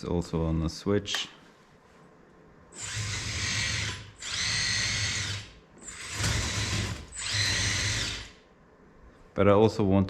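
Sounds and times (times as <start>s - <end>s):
electric motors whirring: 2.8s - 8.4s.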